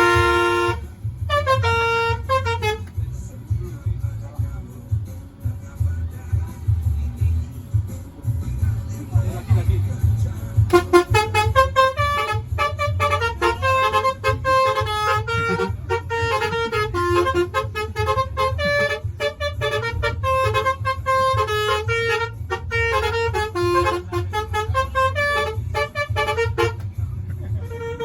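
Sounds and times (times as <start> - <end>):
musical air horn tune: 0.0 - 2.9, 10.7 - 26.8, 27.6 - 28.0
low engine rumble: 0.0 - 28.0.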